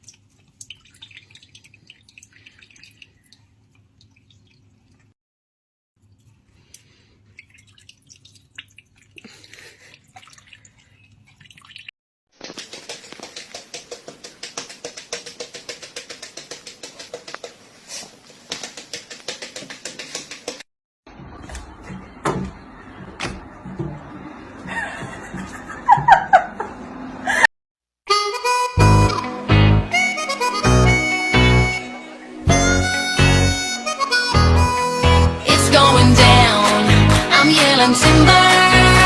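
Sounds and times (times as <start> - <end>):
rhythmic water splashes: 0.0 - 5.2, 6.0 - 11.9, 28.7 - 39.0.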